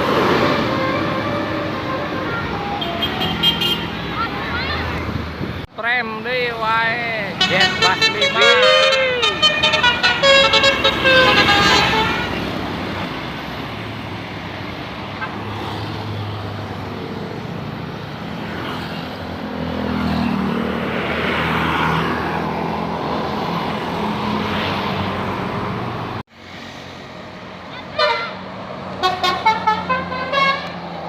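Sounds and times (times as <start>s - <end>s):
traffic noise: 0.0s - 31.0s
musical bus horn: 0.5s - 4.1s, 7.4s - 12.6s, 28.0s - 28.4s, 29.0s - 30.8s.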